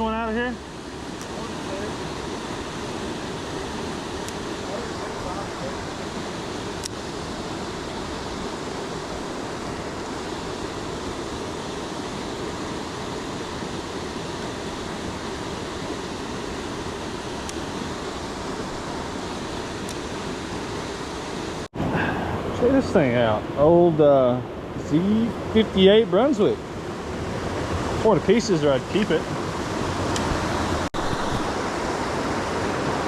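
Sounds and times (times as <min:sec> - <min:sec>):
waterfall rushing: 0:30.4 - 0:33.0.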